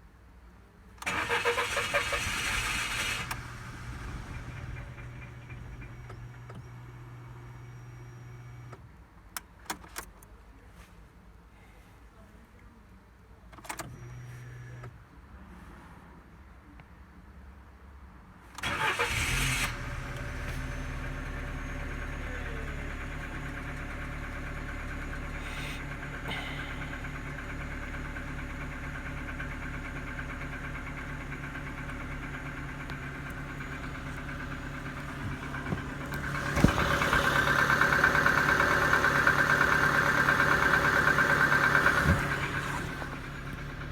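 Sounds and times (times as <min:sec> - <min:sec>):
car engine cranking: 0:01.0 - 0:08.8, 0:18.6 - 0:43.9
car engine idling: 0:01.0 - 0:08.8, 0:18.6 - 0:43.9.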